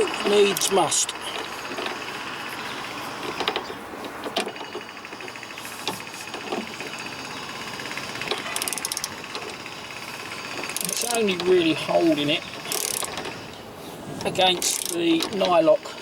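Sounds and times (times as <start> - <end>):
hand tools clicking on metal: 0.0 - 2.2, 7.9 - 9.7, 10.4 - 13.4, 14.2 - 15.7
rapid ratchet clicks: 0.0 - 13.5, 14.2 - 15.8.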